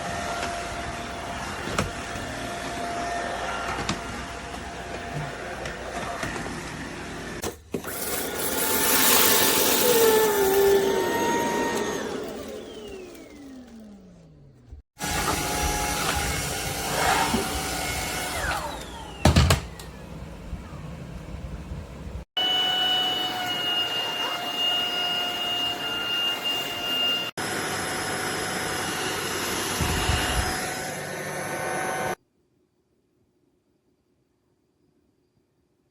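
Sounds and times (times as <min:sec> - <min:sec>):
stick vacuum running: 0:00.0 - 0:21.1.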